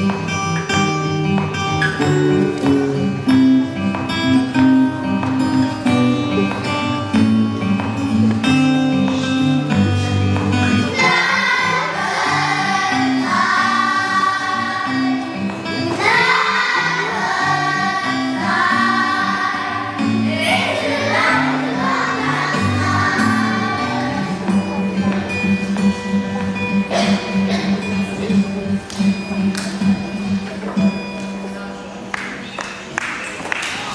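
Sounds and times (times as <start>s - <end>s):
strummed guitar chords: 0.0s - 31.9s
people singing: 10.7s - 24.7s.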